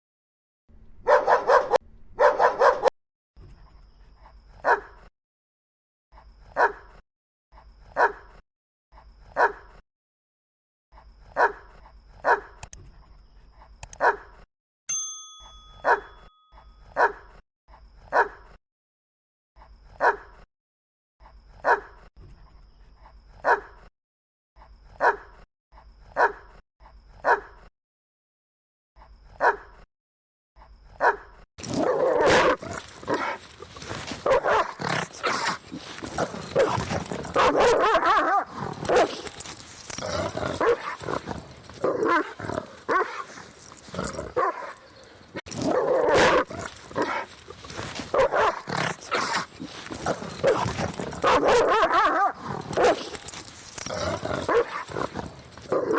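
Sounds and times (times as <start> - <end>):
dog barking: 1.0 - 2.9, 4.6 - 5.1, 6.5 - 7.0, 7.9 - 8.4, 9.3 - 9.8, 11.3 - 12.6, 13.9 - 14.4, 15.8 - 17.4, 18.1 - 18.6, 20.0 - 20.4, 21.6 - 22.1, 23.4 - 23.9, 24.9 - 25.4, 26.1 - 26.6, 27.2 - 27.7, 29.4 - 29.8, 31.0 - 55.9.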